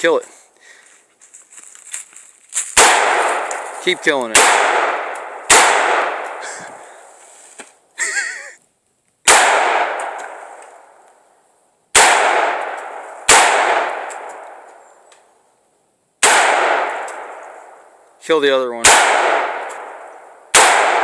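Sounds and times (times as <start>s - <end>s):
rifle shots echoing: 2.7s - 7.1s, 9.3s - 11.0s, 11.9s - 15.0s, 16.2s - 18.0s, 18.7s - 21.0s.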